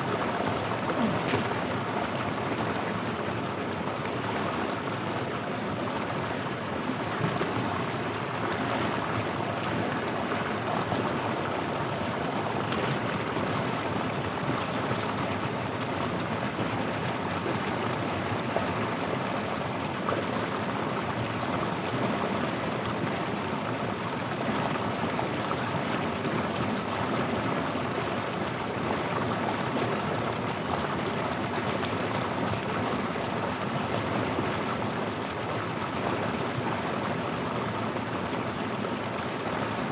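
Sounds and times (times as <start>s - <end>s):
floodwater rushing: 0.0s - 3.1s.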